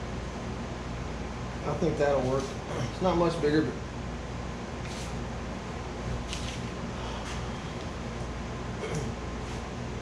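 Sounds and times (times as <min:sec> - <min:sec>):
room hum: 0:00.0 - 0:10.0.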